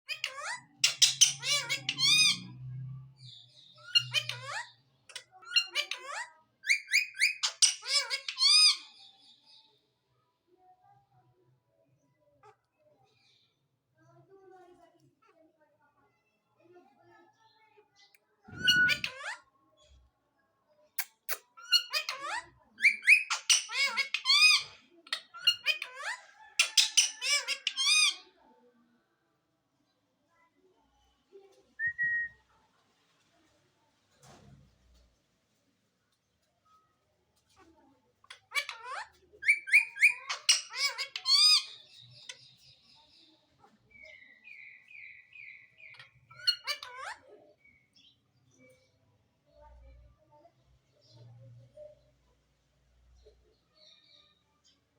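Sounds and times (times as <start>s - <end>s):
parrot calling: 0.1s - 2.5s, 18.5s - 19.4s, 38.5s - 42.4s
parrot chirping: 0.1s - 2.5s, 3.8s - 8.8s, 18.5s - 19.4s, 21.0s - 28.2s, 38.3s - 42.4s, 43.9s - 47.2s.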